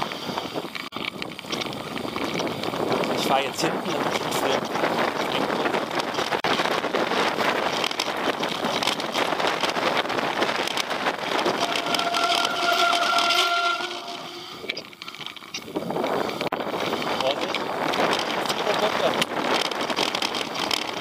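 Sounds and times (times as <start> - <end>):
bike tyres rattling over gravel: 0.0 - 21.0
wind on microphone: 0.0 - 21.0
high squeal: 11.4 - 14.8.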